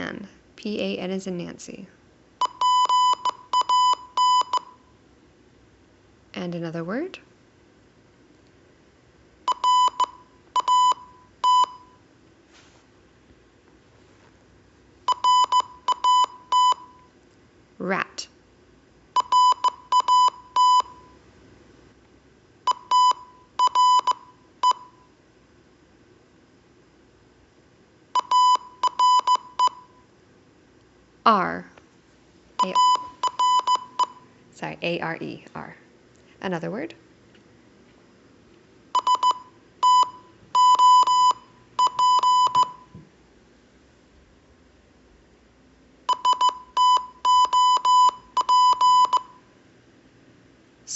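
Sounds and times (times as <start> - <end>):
morse code beeps: 2.4 - 4.8, 9.5 - 12.0, 15.1 - 17.1, 19.2 - 21.2, 22.7 - 25.1, 28.2 - 30.0, 32.6 - 34.3, 39.0 - 42.9, 46.1 - 49.4
morse code tone: 32.6 - 34.2, 39.0 - 42.9, 46.1 - 49.4.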